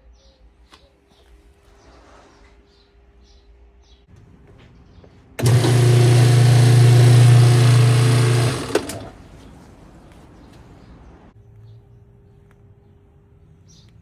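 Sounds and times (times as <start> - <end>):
washing machine humming: 5.4 - 10.1.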